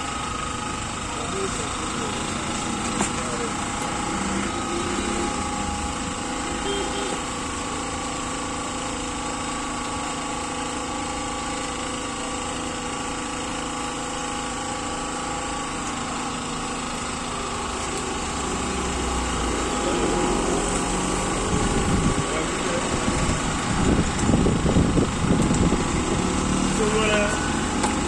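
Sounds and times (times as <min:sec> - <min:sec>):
machine humming with whining tones: 0:00.0 - 0:28.0.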